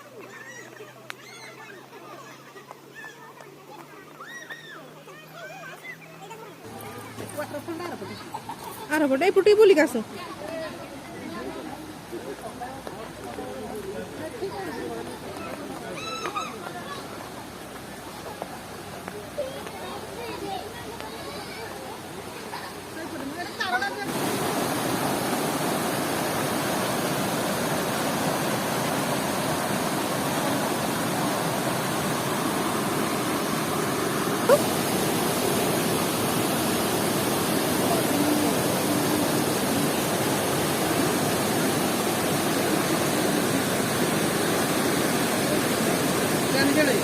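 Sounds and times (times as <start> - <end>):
waterfall rushing: 13.1 - 47.0.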